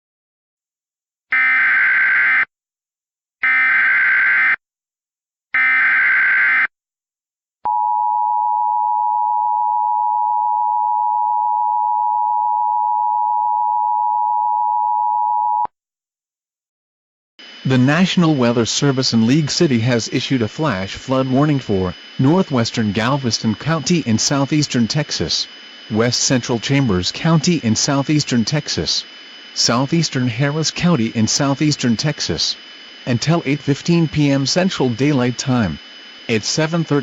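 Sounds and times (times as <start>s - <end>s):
harsh digital data warble: 17.4s - 37.0s
steady two-tone attention signal: 17.4s - 37.0s.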